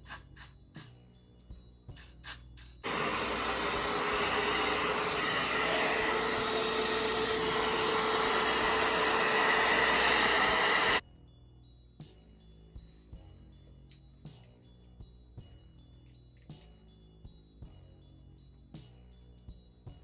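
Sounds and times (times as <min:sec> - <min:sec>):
blow dryer running with whine: 0:02.8 - 0:11.0.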